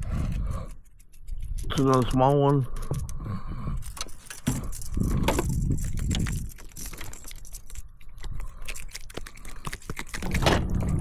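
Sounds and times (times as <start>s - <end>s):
handling clicks rattles and knocks: 0.8s - 3.2s, 3.8s - 11.0s
low rumble: 10.3s - 11.0s.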